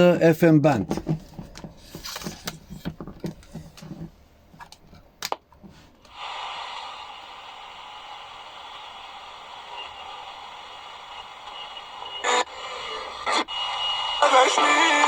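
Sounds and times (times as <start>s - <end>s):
radio static hiss: 6.1s - 15.0s.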